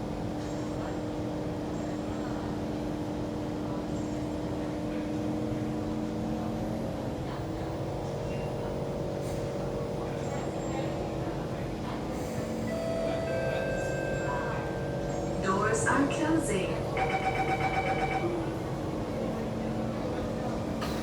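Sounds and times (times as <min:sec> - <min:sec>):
train equipment hum: 0:04.4 - 0:21.0.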